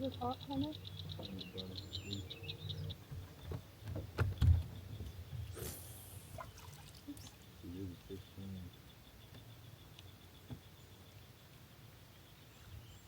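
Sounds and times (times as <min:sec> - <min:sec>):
short hiss: 0:05.5 - 0:06.4.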